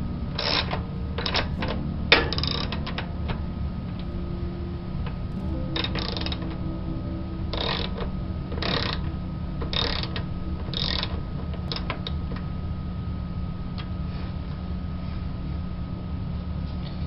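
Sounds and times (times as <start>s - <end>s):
low hum: 0.0s - 17.0s
ratchet wrench clicking: 0.4s - 1.5s, 9.7s - 12.2s.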